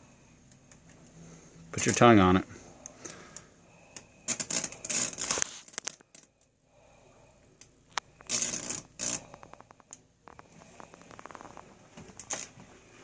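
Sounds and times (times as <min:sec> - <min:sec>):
high-voltage arc crackling: 0:04.3 - 0:05.8, 0:08.2 - 0:09.8.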